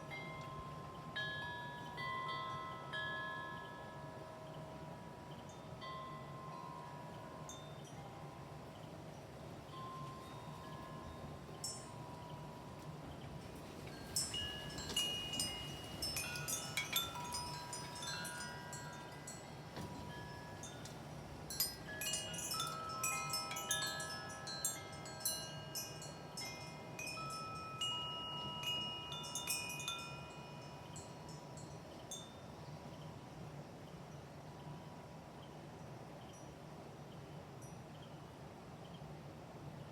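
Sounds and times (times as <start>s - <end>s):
pipe wind chime ringing: 0.0s - 8.9s, 9.7s - 13.0s, 13.9s - 32.6s.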